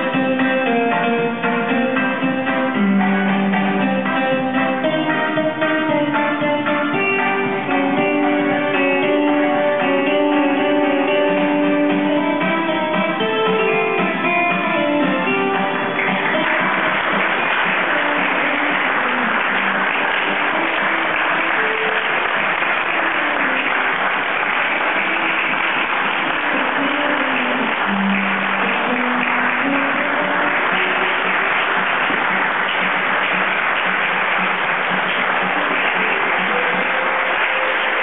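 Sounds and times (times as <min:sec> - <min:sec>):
acoustic guitar picking notes: 0:00.0 - 0:23.8
audience applauding: 0:00.0 - 0:38.0.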